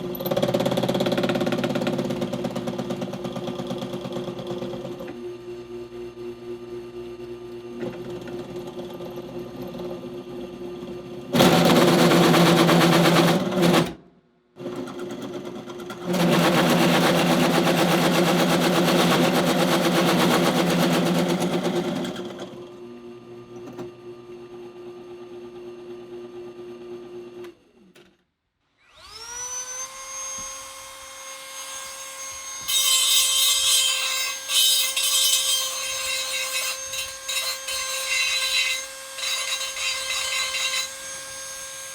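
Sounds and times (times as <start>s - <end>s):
power drill motor running: 28.8s - 31.0s
power tool motor spinning up: 28.8s - 31.0s
hole saw cutting steel: 28.8s - 41.9s.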